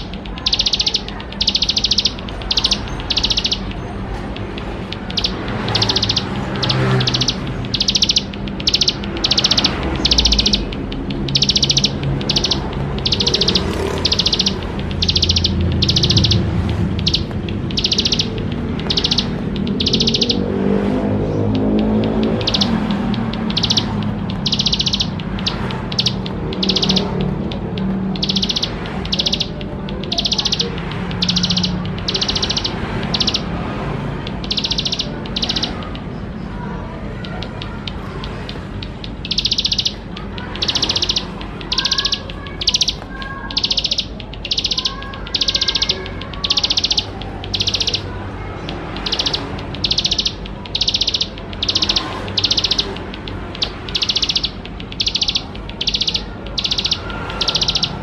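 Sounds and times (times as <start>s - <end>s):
bird buzzy high-pitched trills: 0.0s - 58.0s
bird soft chirps: 5.1s - 20.5s.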